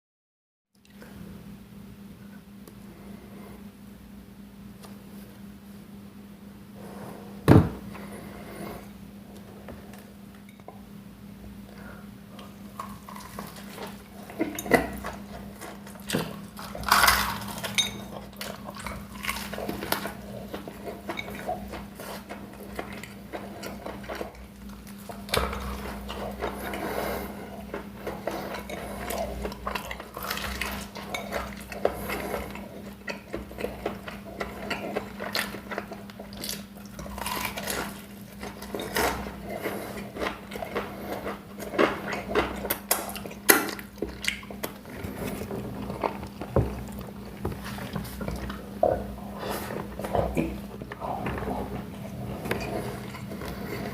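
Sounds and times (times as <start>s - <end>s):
chewing food: 12.4s - 53.9s.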